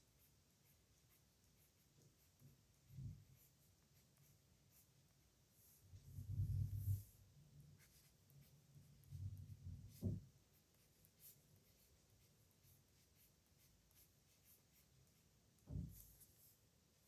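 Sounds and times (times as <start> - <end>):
pen scratching on paper: 0.2 - 7.1, 7.8 - 14.9
soft handling bump: 15.7 - 16.3.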